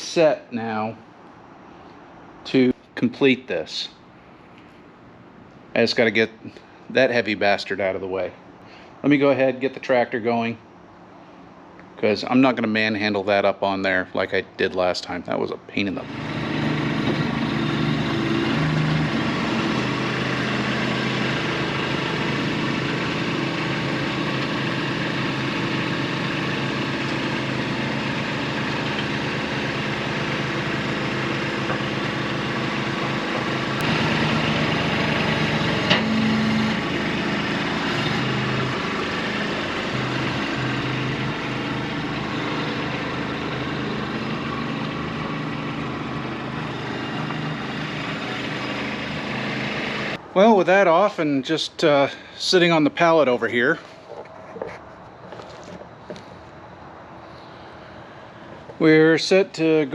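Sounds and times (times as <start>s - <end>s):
tractor engine running: 16.0s - 50.2s.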